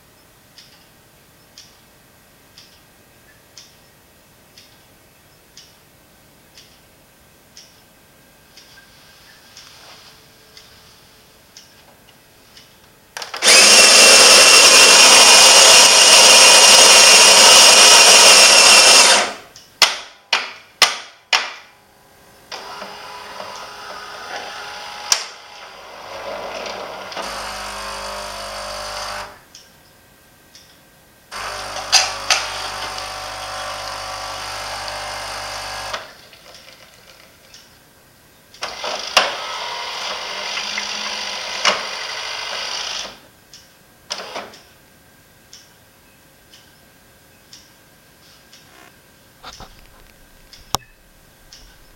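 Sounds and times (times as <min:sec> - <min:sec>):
low steady buzz: 0:00.0 - 0:14.2, 0:19.1 - 0:26.0, 0:44.7 - 0:51.9
espresso machine mechanical run: 0:13.4 - 0:19.4, 0:22.6 - 0:29.4, 0:31.4 - 0:36.1
quiet whirring: 0:44.5 - 0:51.9.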